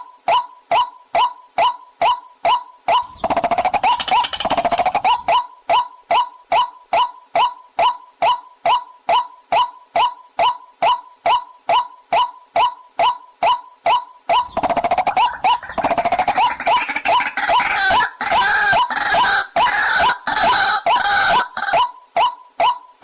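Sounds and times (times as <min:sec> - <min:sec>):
harsh rapid bird chatter: 0:02.9 - 0:05.4, 0:14.3 - 0:21.9
water hen call: 0:15.1 - 0:21.9.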